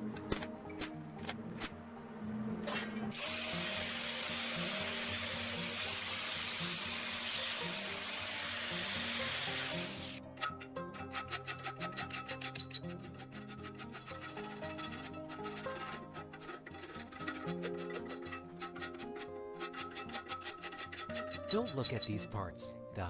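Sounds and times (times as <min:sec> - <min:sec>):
background music: 0:00.0 - 0:23.0
hissing rush of spray: 0:03.2 - 0:09.3
quick rhythmic strokes: 0:03.2 - 0:22.4.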